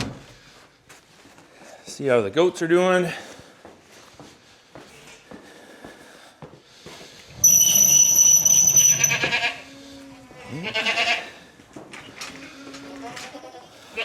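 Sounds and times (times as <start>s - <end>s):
goats bleating: 9.0s - 11.5s, 12.2s - 14.0s.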